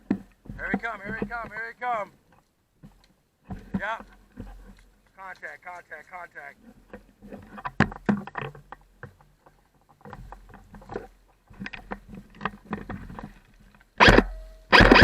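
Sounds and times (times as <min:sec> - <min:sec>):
airsoft guns popping: 0:14.0 - 0:15.0.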